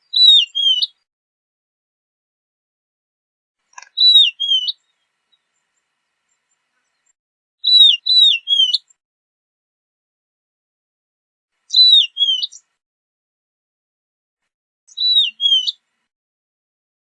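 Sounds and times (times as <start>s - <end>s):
lark calling: 0.0s - 1.0s, 3.8s - 4.8s, 7.6s - 8.9s, 11.7s - 12.6s, 14.9s - 15.8s.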